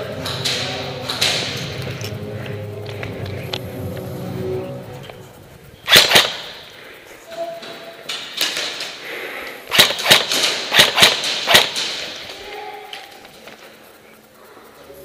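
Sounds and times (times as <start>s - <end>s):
airsoft gun single shots: 5.9s - 6.5s, 9.7s - 12.1s.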